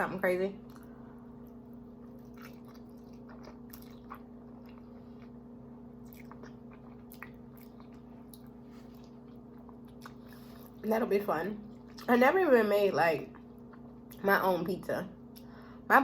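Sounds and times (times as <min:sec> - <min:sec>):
low electrical hum: 0:00.0 - 0:16.0
wet chewing mouth sounds: 0:00.6 - 0:05.4, 0:06.0 - 0:10.8, 0:11.6 - 0:12.1, 0:13.2 - 0:14.2.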